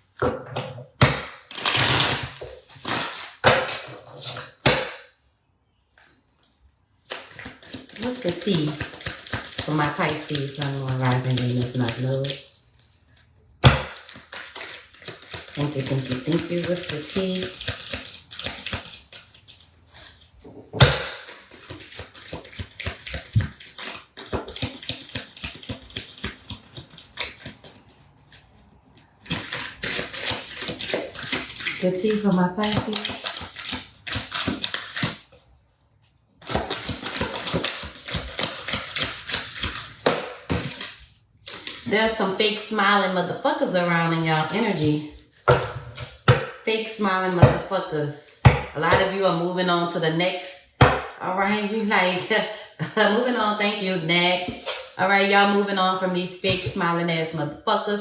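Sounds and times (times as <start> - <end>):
cards being shuffled: 7.0 - 13.0, 14.0 - 20.2, 21.2 - 35.4, 36.4 - 41.9.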